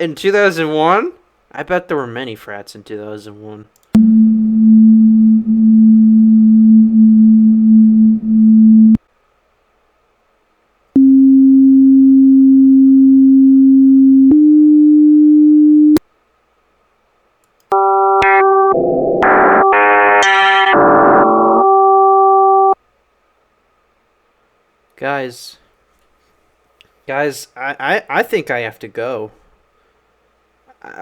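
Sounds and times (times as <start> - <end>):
steady electronic tones: 4.0 - 9.0, 17.7 - 22.8
synth-like chords: 17.7 - 22.8.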